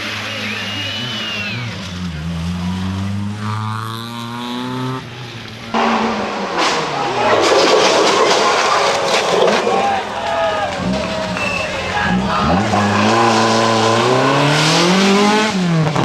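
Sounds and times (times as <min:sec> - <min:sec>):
people's voices: 0:00.0 - 0:03.5, 0:04.7 - 0:14.4
race car engine accelerating: 0:00.0 - 0:16.0
rush of noise with clattering: 0:05.7 - 0:11.2.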